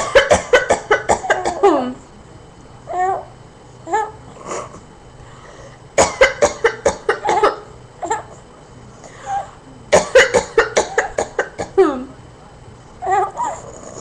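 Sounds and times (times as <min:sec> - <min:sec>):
woman coughing: 0:00.0 - 0:02.0, 0:06.0 - 0:08.3, 0:09.9 - 0:12.1.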